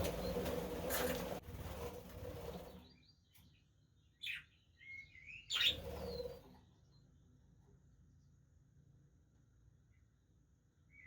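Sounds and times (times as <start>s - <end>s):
budgerigar wings fluttering: 0.0s - 2.8s
budgerigar chirp: 4.2s - 6.2s.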